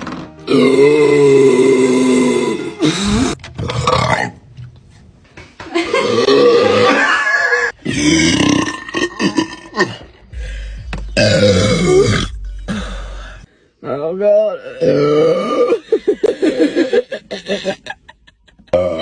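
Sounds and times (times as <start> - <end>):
person burping loudly: 0.4 - 4.4, 5.8 - 10.3, 11.2 - 13.2, 14.6 - 15.8, 18.7 - 19.0.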